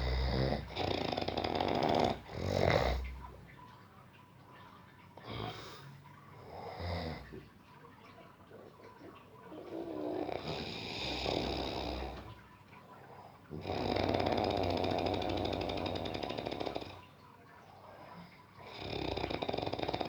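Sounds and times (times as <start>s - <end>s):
person snoring: 0.0s - 3.1s, 13.6s - 17.0s.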